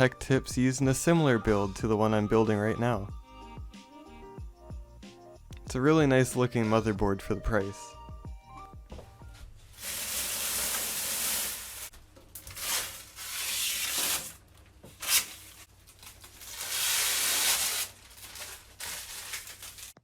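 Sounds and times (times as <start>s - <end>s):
plastic packaging crinkling: 9.8s - 20.0s.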